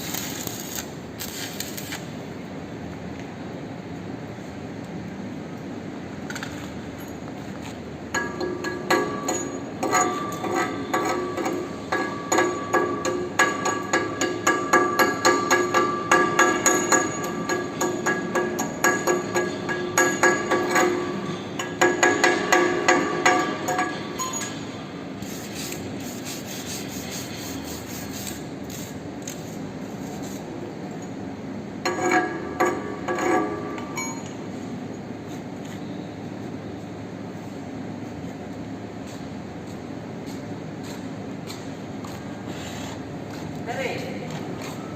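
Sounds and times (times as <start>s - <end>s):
steady background noise: 0.0s - 44.9s
sharp metal clanks: 8.1s - 24.8s, 31.8s - 34.4s
hammer striking ringing steel: 8.2s - 24.8s, 31.9s - 34.4s
fast scraping on metal: 25.2s - 29.0s.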